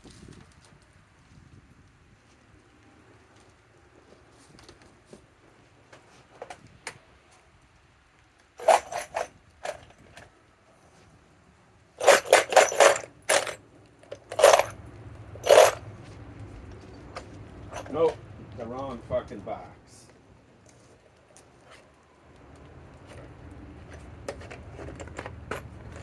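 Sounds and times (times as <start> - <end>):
tools clattering in a box: 8.6 - 10.3, 12.0 - 14.8, 15.4 - 15.9, 17.2 - 18.2, 23.1 - 26.0.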